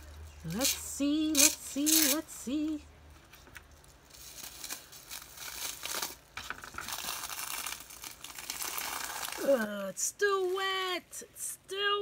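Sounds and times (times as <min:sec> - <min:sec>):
bubble wrap crinkling: 0:00.0 - 0:11.1.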